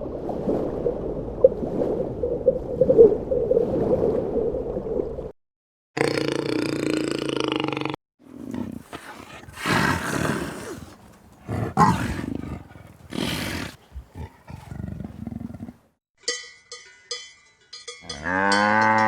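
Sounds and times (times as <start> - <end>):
animal breathing sounds: 8.4 - 15.8.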